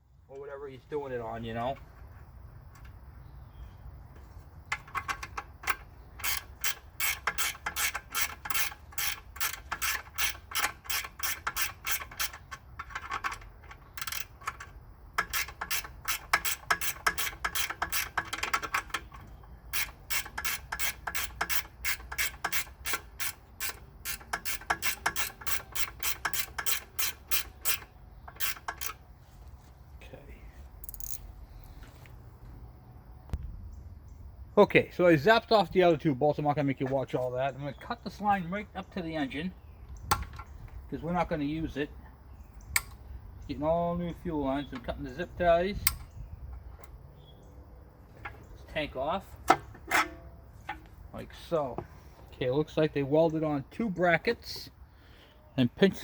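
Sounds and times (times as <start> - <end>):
ratchet wrench clicking: 5.6 - 14.6, 15.2 - 19.1, 19.7 - 29.0, 30.8 - 31.3.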